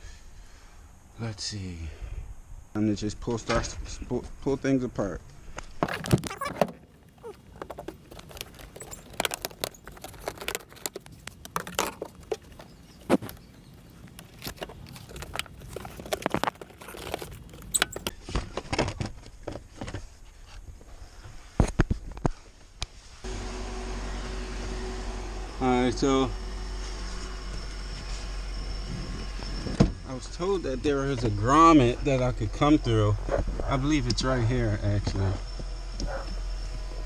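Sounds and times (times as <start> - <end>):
plastic trim clicking and rattling: 5.9 - 13.4.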